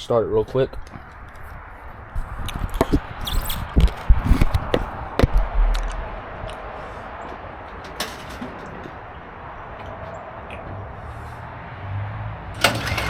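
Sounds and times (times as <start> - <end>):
low thud: 4.1 - 6.4
knocks and clicks of snowblower controls: 12.6 - 13.0.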